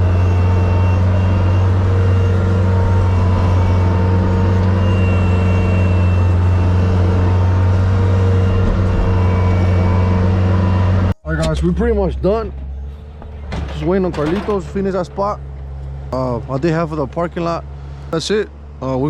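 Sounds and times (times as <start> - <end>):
vehicle engine droning: 0.0 - 19.0.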